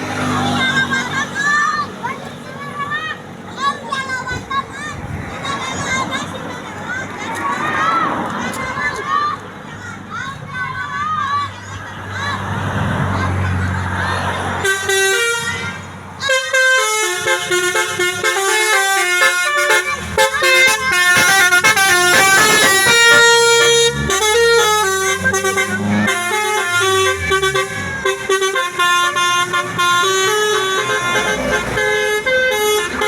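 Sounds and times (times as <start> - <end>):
bus horn playing a tune: 14.2 - 33.0.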